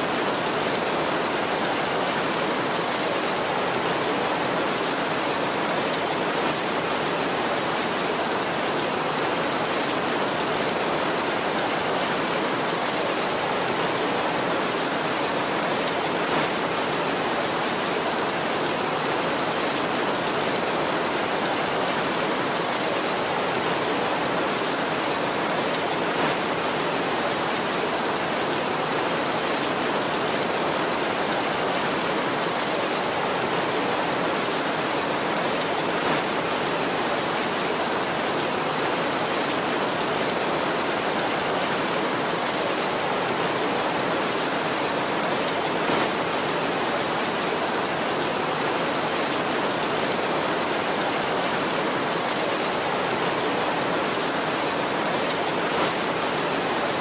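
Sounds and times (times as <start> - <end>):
heavy rain falling: 0.0 - 57.0
rain spatters: 0.3 - 57.0.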